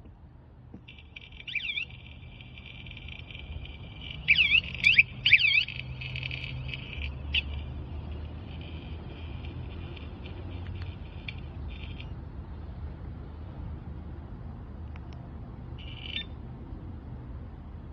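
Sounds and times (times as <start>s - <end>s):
bike alarm warbling siren: 0.9s - 7.8s, 15.8s - 16.4s.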